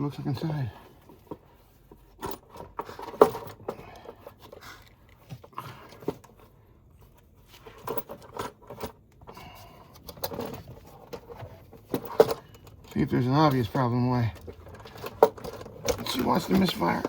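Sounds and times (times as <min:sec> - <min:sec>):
hand tools clinking on engine: 0:11.9 - 0:17.0.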